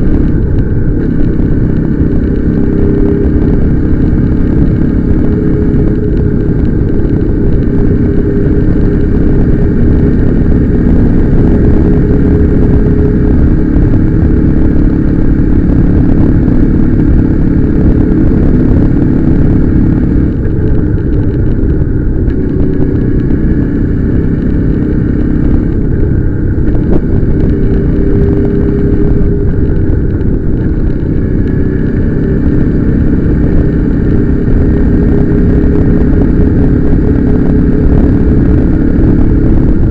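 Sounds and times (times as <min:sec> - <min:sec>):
motorcycle engine running: 0:00.0 - 0:39.9
wind noise on microphone: 0:00.0 - 0:39.9.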